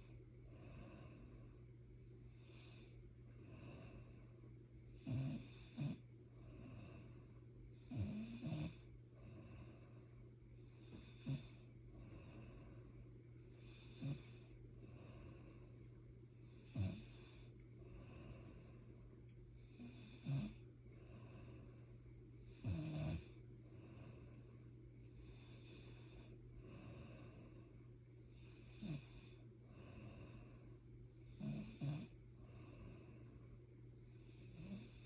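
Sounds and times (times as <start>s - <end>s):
steady low hum: 0.0s - 35.0s
person snoring with loud snorts: 5.0s - 6.0s, 7.9s - 8.8s, 10.9s - 11.6s, 13.8s - 14.4s, 16.8s - 17.3s, 19.8s - 20.6s, 31.4s - 33.0s.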